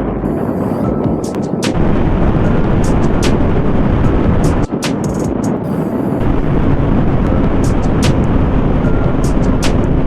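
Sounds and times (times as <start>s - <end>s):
background music: 0.0s - 10.0s
road noise: 1.7s - 4.8s, 6.2s - 10.0s
wind rushing: 1.7s - 10.0s.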